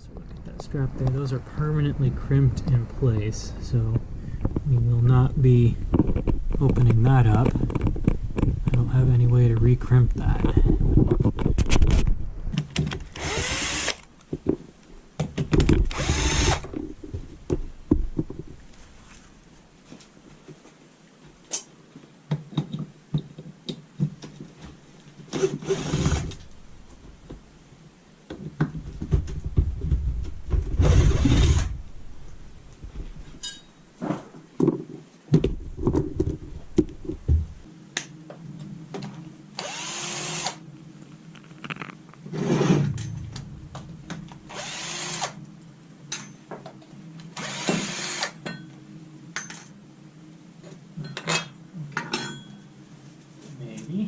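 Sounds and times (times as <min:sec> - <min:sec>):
power drill bursts: 0:13.1 - 0:14.0, 0:15.9 - 0:16.7, 0:25.4 - 0:26.3, 0:30.8 - 0:31.7, 0:39.6 - 0:40.6, 0:44.5 - 0:45.4, 0:47.4 - 0:48.4.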